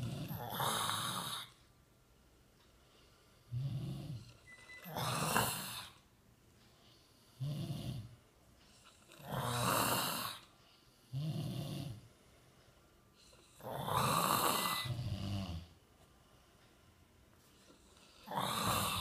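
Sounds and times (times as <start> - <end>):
person snoring: 0.0 - 1.6, 3.5 - 6.0, 9.2 - 10.4, 11.1 - 12.1, 13.5 - 15.7, 18.0 - 19.0.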